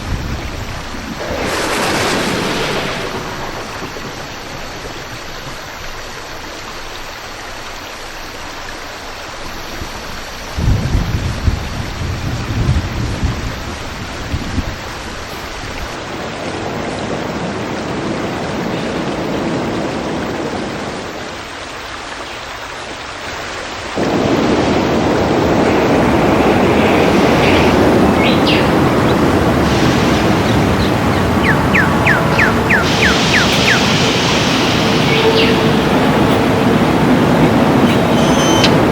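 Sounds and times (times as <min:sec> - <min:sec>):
thunder rumbling: 0:00.0 - 0:06.6, 0:24.0 - 0:38.9
steady rush of noise: 0:00.0 - 0:09.4, 0:24.0 - 0:38.9
rain: 0:00.0 - 0:38.9
short high chirps: 0:38.1 - 0:38.8.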